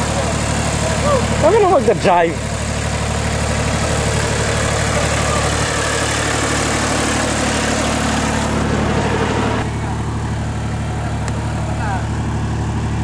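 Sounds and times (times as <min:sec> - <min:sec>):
bulldozer engine idling: 0:00.0 - 0:13.0.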